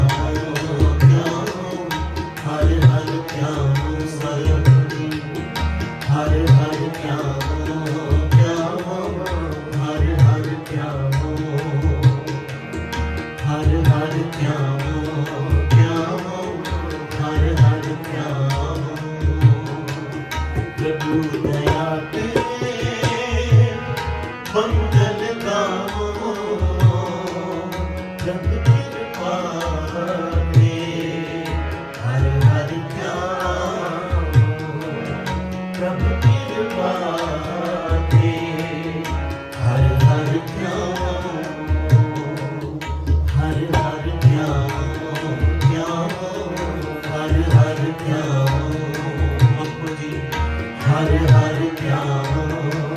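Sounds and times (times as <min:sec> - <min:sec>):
tabla drumming: 0:00.0 - 0:52.9
person singing: 0:43.4 - 0:52.9.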